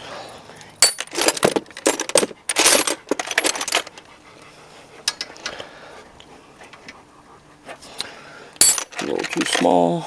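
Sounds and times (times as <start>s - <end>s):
metal sockets clinking: 8.6s - 9.8s.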